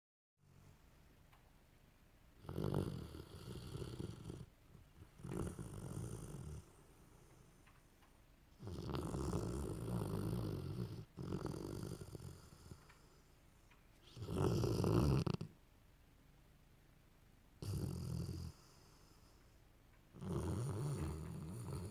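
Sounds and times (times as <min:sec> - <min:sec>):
dog snoring: 0:02.4 - 0:04.5, 0:05.1 - 0:07.6, 0:08.6 - 0:13.2, 0:14.0 - 0:15.5, 0:17.6 - 0:19.4, 0:20.2 - 0:21.9.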